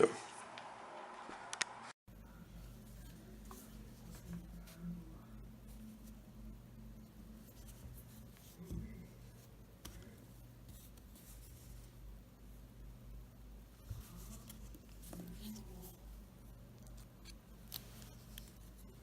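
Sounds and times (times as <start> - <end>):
steady low hum: 2.1 - 19.0
scratchy handling sounds: 7.2 - 12.0, 13.7 - 19.0.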